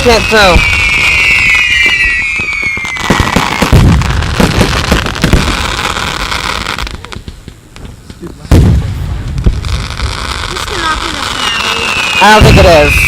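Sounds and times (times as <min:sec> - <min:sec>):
firework whistles falling in pitch: 0:00.0 - 0:04.0, 0:11.0 - 0:13.0
firework bangs and crackles: 0:00.0 - 0:13.0.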